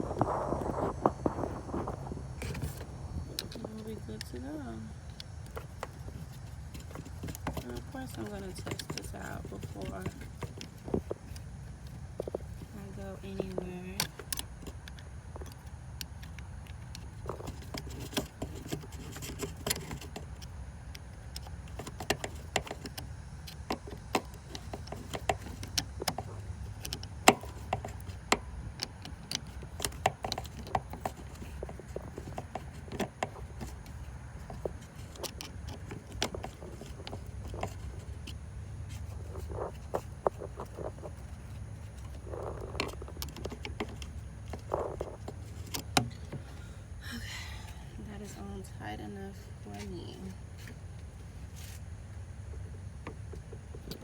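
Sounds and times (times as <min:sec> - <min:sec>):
low rumble: 0:00.0 - 0:05.2.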